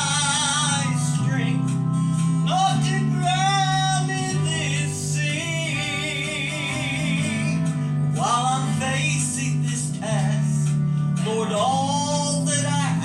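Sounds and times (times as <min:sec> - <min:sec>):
people singing gospel song: 0:00.0 - 0:01.6
guitar accompaniment: 0:00.0 - 0:13.0.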